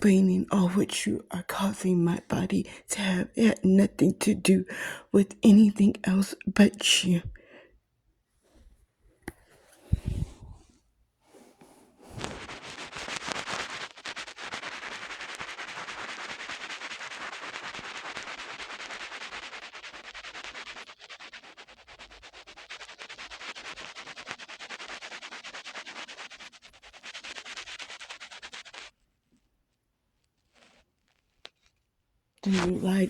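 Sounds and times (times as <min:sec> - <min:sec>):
rapid rubbing with fine ticks: 0:00.0 - 0:04.6, 0:11.3 - 0:33.0.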